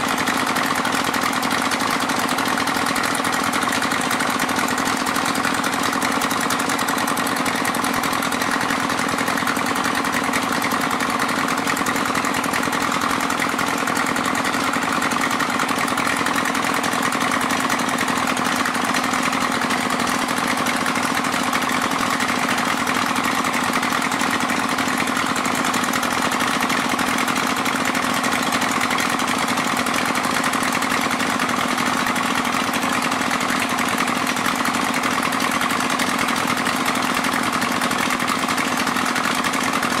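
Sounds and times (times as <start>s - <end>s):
water pump engine running: 0.0s - 40.0s.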